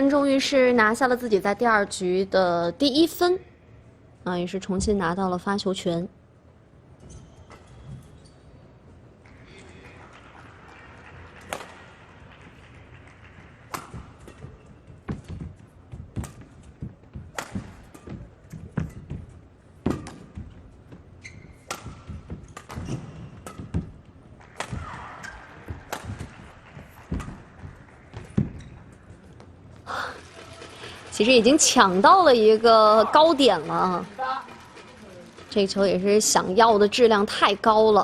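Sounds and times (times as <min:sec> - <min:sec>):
racket hitting shuttlecock: 0:11.3 - 0:20.6, 0:21.2 - 0:29.6
footsteps on court floor: 0:12.4 - 0:32.3.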